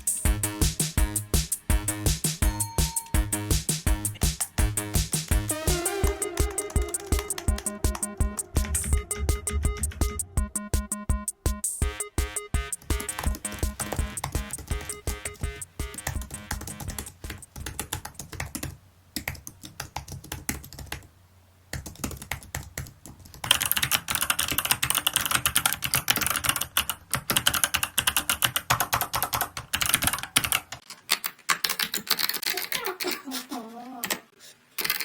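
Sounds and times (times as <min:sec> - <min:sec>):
mechanical keyboard typing: 0:12.8 - 0:21.1, 0:21.7 - 0:33.2, 0:34.8 - 0:35.0.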